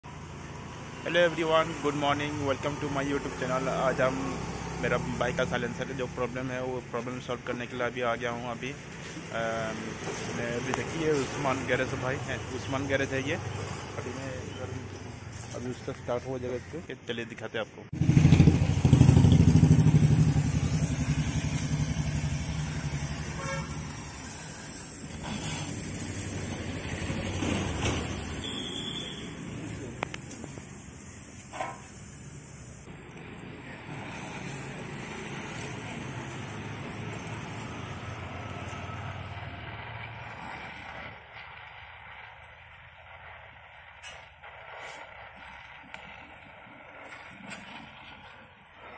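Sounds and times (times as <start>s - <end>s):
motorcycle engine running: 18.0s - 23.7s.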